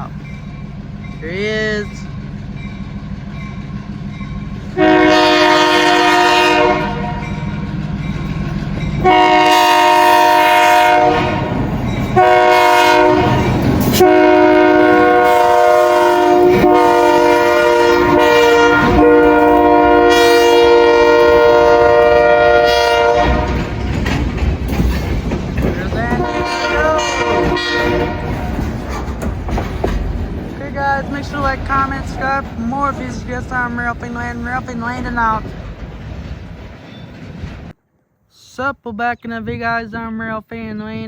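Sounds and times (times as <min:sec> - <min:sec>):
locomotive engine rumble: 0:00.0 - 0:37.8
locomotive air horn blasts: 0:04.8 - 0:07.5, 0:09.0 - 0:11.6, 0:12.2 - 0:13.4, 0:14.0 - 0:23.6, 0:26.1 - 0:28.5.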